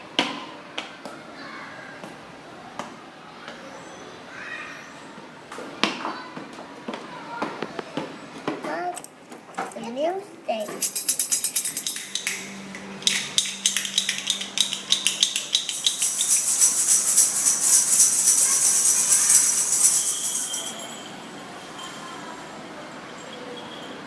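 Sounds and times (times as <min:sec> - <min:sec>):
quick clicks and taps: 0:10.6 - 0:19.9
fast high-pitched rattle: 0:10.6 - 0:21.2.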